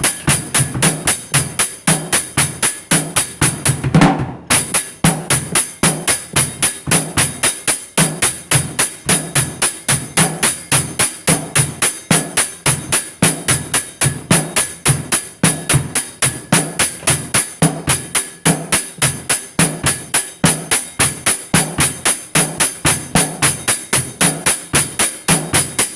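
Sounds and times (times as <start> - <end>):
fast percussive beat: 0.0 - 25.9.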